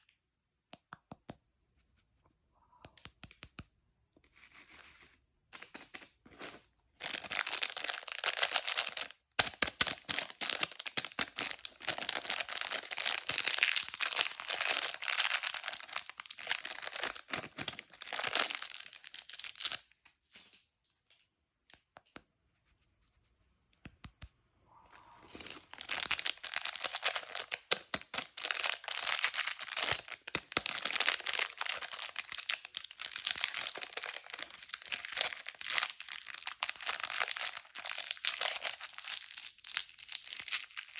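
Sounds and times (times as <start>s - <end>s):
plastic candy packaging crinkling: 5.6s - 21.2s, 25.2s - 40.9s.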